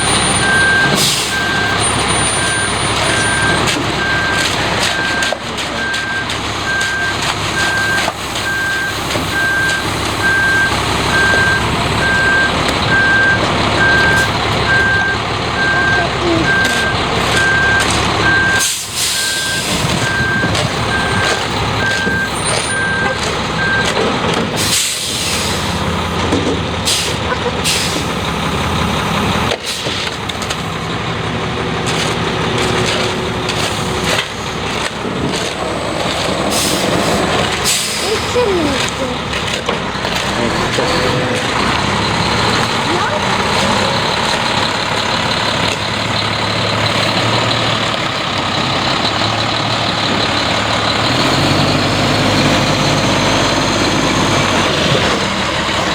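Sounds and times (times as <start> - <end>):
reverse alarm beeping: 0.0 - 4.4, 5.0 - 23.9
concrete mixer truck running: 0.0 - 55.9.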